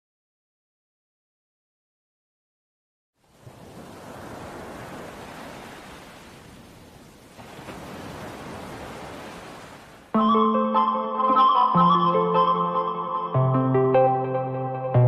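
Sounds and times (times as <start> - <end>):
music with plucked strings: 10.2 - 15.0.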